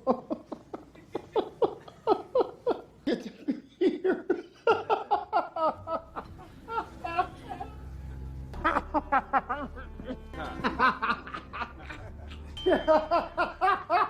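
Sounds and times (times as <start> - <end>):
person laughing: 8.6 - 14.0.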